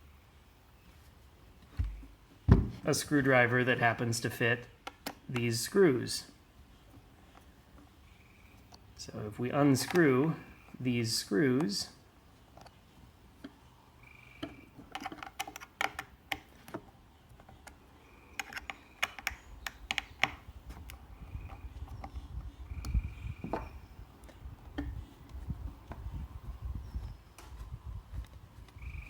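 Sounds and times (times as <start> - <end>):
screwdriver clicks and taps: 14.4 - 16.8, 18.4 - 21.0.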